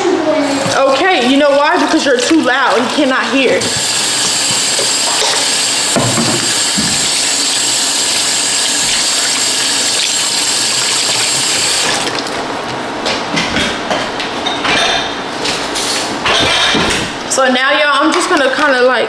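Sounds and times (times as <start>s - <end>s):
tap water running into sink: 1.4s - 12.5s.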